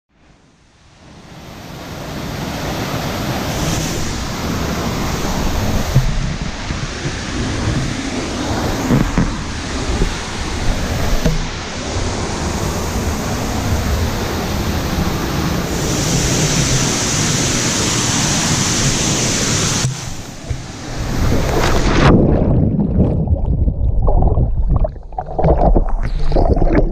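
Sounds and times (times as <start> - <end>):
waterfall rushing: 1.4 - 22.0.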